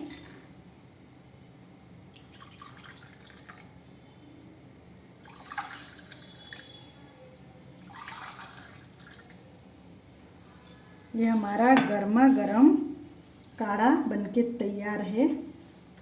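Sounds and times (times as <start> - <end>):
liquid trickling into a glass: 2.1 - 3.8, 5.2 - 6.9, 7.8 - 9.5.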